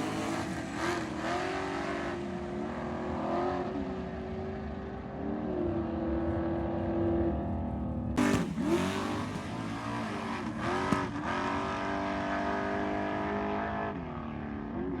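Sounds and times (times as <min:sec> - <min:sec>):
car engine running under load: 0:06.2 - 0:11.8.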